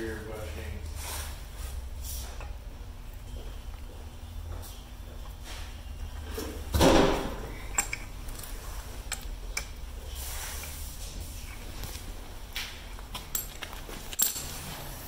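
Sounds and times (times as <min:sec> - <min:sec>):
light metal clicks and taps: 0:07.7 - 0:08.5, 0:09.1 - 0:09.8
metal parts scraping clunk: 0:13.1 - 0:15.0.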